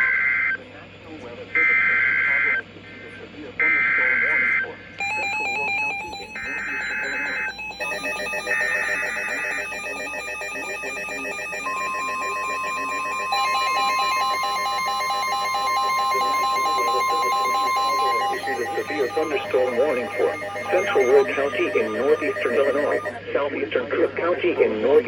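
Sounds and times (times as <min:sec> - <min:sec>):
fast electronic beeping: 0:05.0 - 0:23.2
steady attention tone: 0:05.0 - 0:23.2
buzzy warbling data bursts: 0:05.4 - 0:23.2.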